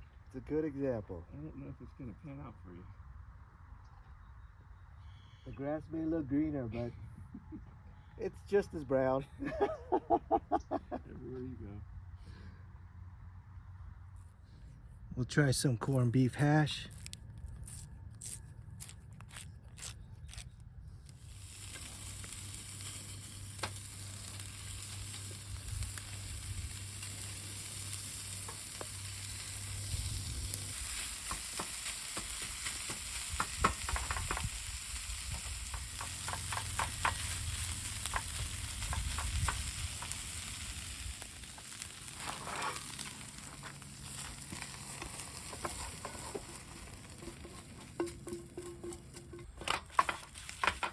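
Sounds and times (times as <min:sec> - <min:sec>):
food sizzling in a pan: 0:21.1 - 0:50.9
utensil scraping and tapping: 0:30.9 - 0:34.6, 0:35.2 - 0:40.2, 0:41.6 - 0:50.9.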